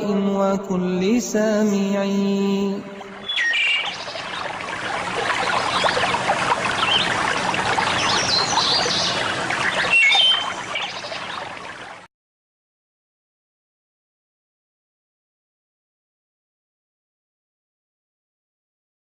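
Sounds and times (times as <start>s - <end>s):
running water: 1.6s - 12.1s
small birds chirping: 3.2s - 11.8s.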